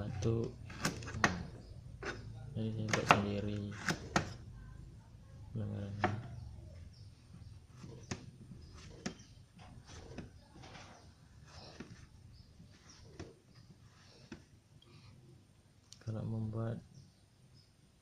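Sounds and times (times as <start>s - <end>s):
faint taps and knocks: 12.7s - 14.6s.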